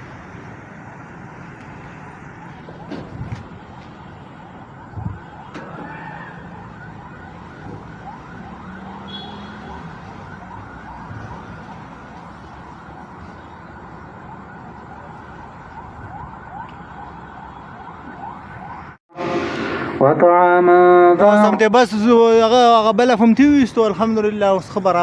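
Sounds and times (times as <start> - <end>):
loudspeaker hissing and warbling: 19.1 - 21.2.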